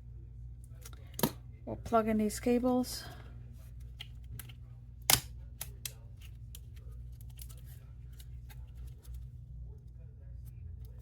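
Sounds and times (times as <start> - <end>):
sharp plastic snap: 4.4 - 6.0.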